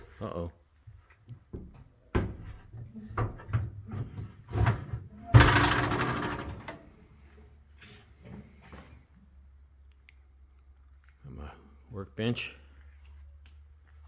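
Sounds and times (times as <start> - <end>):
knocks and rattles: 1.5 - 6.9
loud ringing clatter: 5.4 - 6.8.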